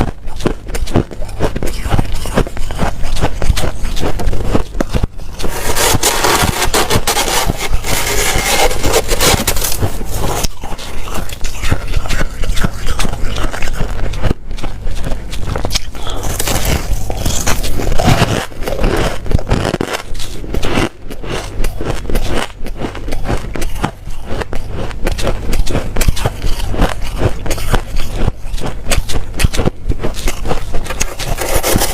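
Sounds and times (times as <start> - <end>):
chewing crunchy ice: 0.0 - 31.9.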